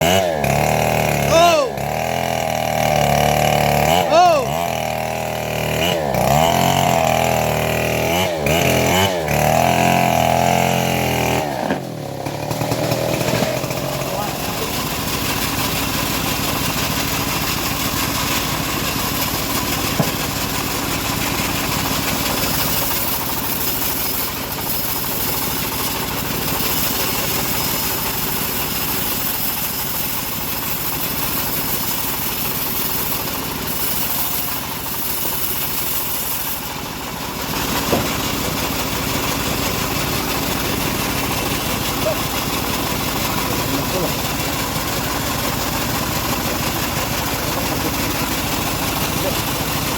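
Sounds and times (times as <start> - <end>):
sawmill engine running: 0.0 - 49.9
sharp knocks: 19.9 - 20.4.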